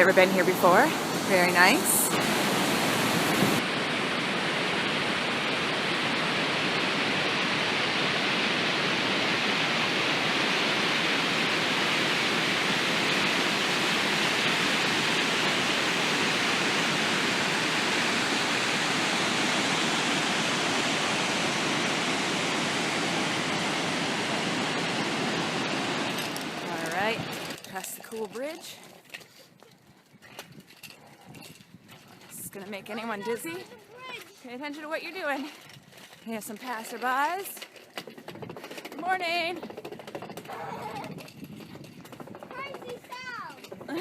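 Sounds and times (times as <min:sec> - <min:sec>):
waterfall rushing: 0:00.0 - 0:27.6.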